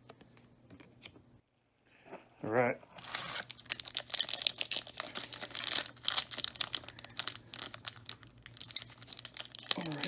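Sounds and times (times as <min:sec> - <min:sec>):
wrapper tearing and crinkling: 0:03.0 - 0:10.0.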